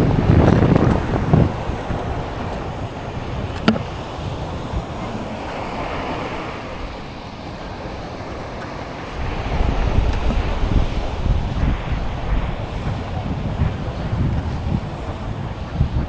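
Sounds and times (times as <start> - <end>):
surf washing on sand: 0.0 - 16.0
wind buffeting microphone: 0.0 - 16.0.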